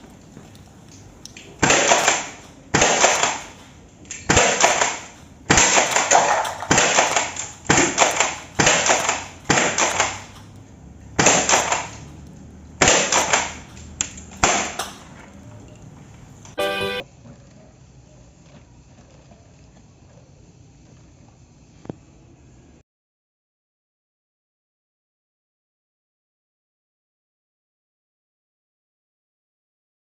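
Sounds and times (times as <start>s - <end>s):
airsoft shotgun shots: 1.6s - 10.5s, 11.2s - 12.1s, 12.8s - 15.0s
brief pitched tone: 16.6s - 17.0s.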